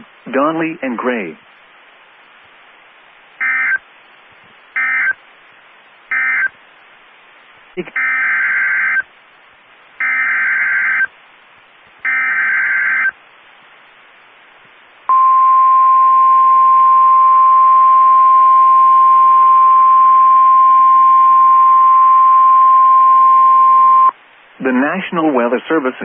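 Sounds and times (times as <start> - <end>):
single-pitch warning alarm tone: 3.4 - 3.8, 4.8 - 5.2, 6.1 - 6.5, 10.0 - 11.1, 12.0 - 13.1, 15.1 - 24.1.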